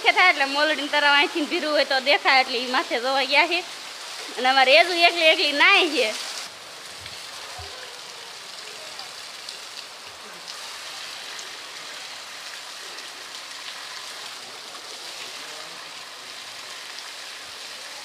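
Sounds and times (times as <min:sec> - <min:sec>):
rain on the ground: 0:00.0 - 0:18.0.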